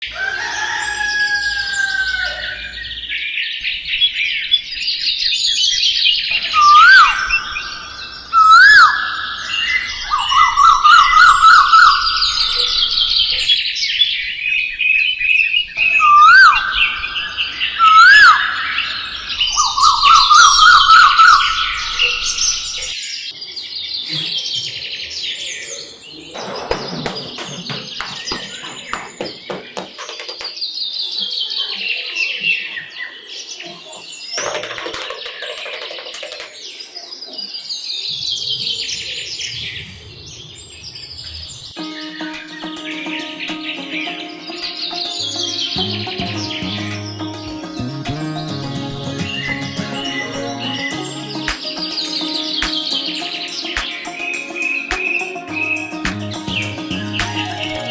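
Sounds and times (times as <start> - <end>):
songbirds chirping and singing: 22.2 - 39.9, 41.7 - 57.9.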